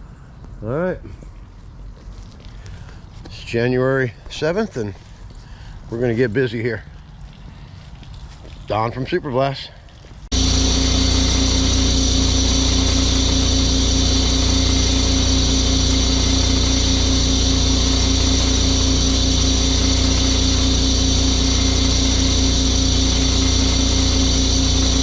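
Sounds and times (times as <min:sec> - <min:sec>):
pressure washer engine running: 0:10.3 - 0:25.0.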